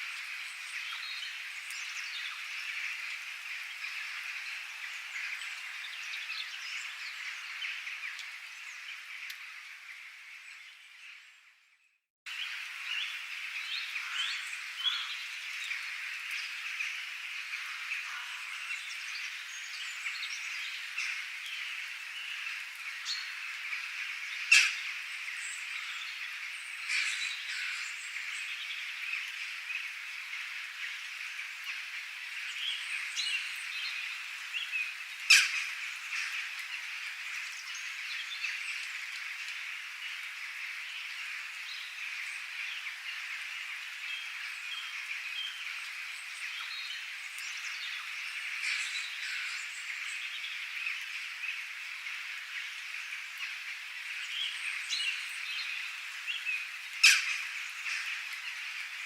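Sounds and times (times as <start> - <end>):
birds chirping and calling: 32.6 - 38.9, 46.4 - 51.0, 54.4 - 59.0.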